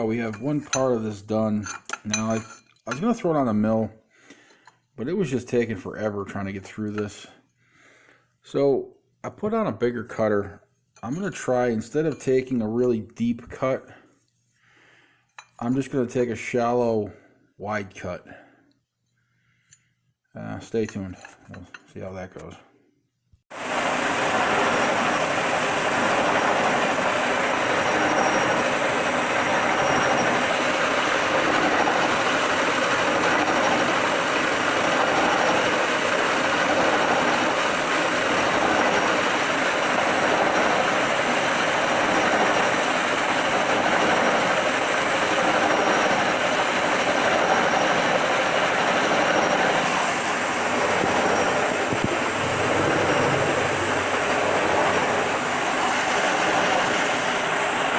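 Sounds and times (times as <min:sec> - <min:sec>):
milling cutter cutting steel: 0:24.3 - 0:57.8.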